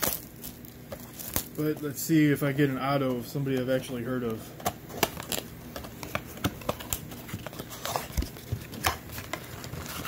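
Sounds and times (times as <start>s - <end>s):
cardboard and wrapper snaps: 0.0s - 1.6s
card packaging being opened: 0.0s - 2.2s, 3.5s - 10.0s.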